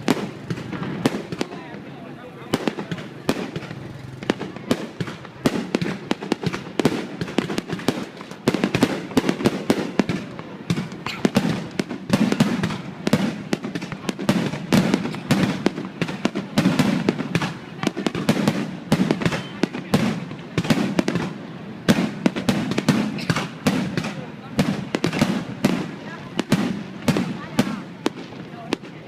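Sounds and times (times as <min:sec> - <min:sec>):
fireworks banging: 0:00.0 - 0:29.0.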